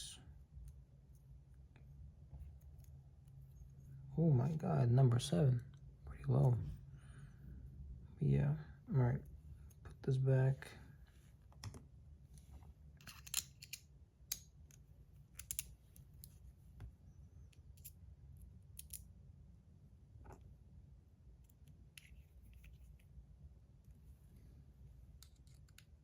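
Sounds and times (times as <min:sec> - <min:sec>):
small metal parts clicking: 0:13.0 - 0:16.4, 0:18.7 - 0:19.1.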